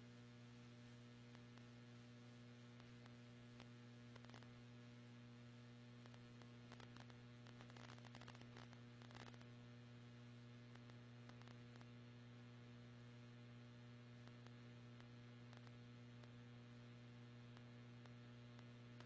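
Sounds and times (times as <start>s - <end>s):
electrical mains hum: 0.0s - 19.0s
faint ticks: 1.2s - 1.7s, 2.6s - 4.6s, 6.0s - 9.6s, 10.6s - 12.0s, 14.2s - 16.4s, 17.5s - 19.0s.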